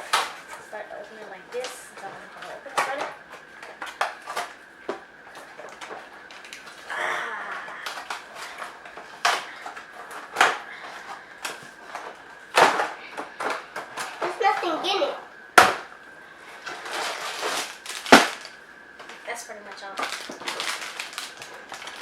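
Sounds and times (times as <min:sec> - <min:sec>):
packaging rustle: 0:00.0 - 0:14.8, 0:15.9 - 0:22.0
sharp knocks: 0:15.6 - 0:15.9.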